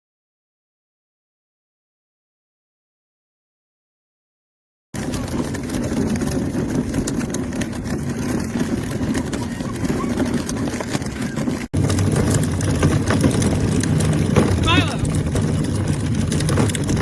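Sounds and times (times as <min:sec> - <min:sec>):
plastic wheels rolling on pavement: 0:05.0 - 0:17.0.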